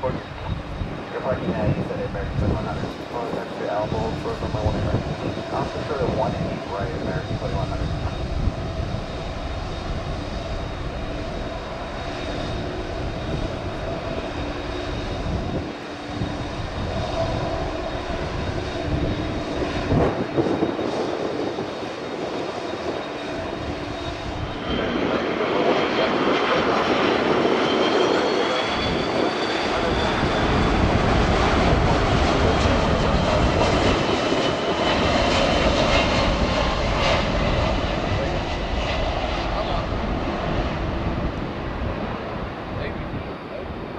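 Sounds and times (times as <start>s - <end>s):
jet engines whining: 0.0s - 43.9s.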